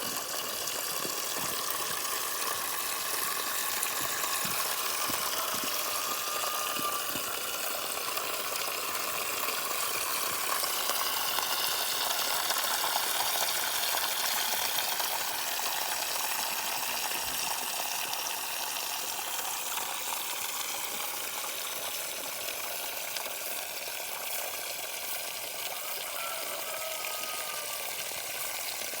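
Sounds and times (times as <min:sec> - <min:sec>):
water rushing: 0:00.0 - 0:16.6.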